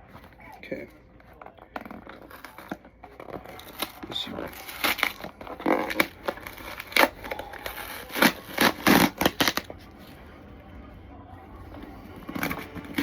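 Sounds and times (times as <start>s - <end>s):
packaging rustling and tearing: 1.3s - 9.8s.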